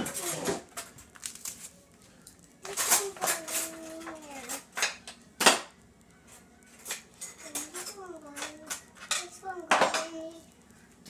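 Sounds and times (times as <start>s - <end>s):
dishes clattering: 0.0s - 1.0s, 6.8s - 10.1s
dishes and silverware clinking: 2.6s - 5.7s, 6.7s - 10.1s.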